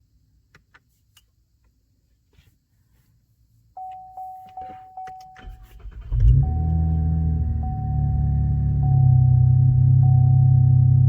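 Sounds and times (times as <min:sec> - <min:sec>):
car warning chime pinging: 0:03.8 - 0:11.0
car engine starting and idling: 0:05.0 - 0:11.0.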